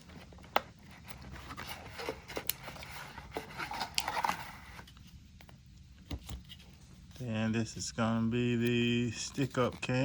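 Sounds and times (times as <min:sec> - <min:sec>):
packaging rustling: 0:00.0 - 0:05.0.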